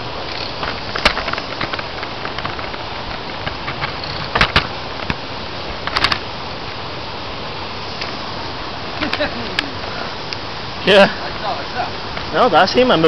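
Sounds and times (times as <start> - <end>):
bicycle rattling on dirt trail: 0.0 - 5.2
wind: 0.0 - 13.0.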